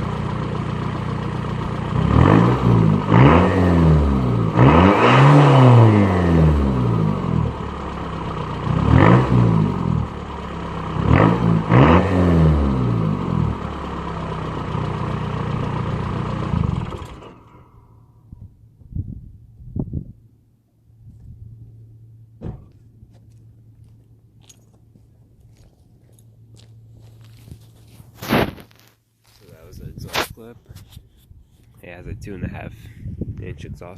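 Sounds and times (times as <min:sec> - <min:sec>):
diesel engine revving and idling: 0:00.0 - 0:18.8.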